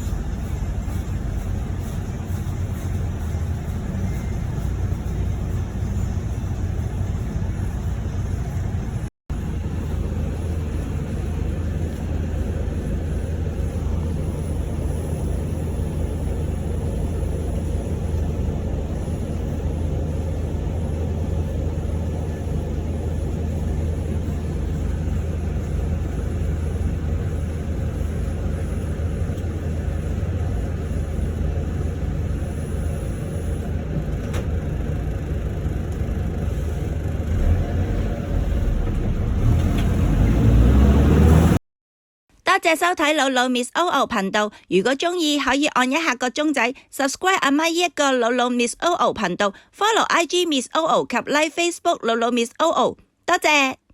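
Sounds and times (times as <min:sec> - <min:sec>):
engine and road rumble in bus: 0:00.0 - 0:41.6.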